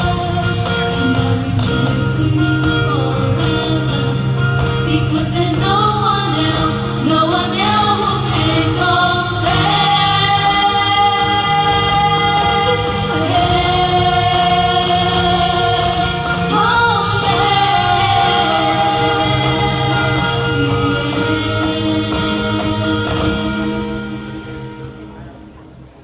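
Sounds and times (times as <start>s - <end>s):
group of voices singing: 4.9s - 25.0s.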